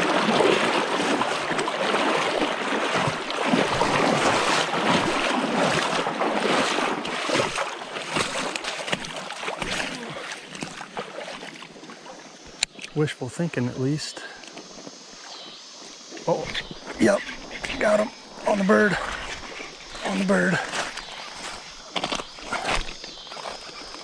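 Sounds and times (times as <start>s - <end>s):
creek water rushing and splashing: 0.0s - 24.0s.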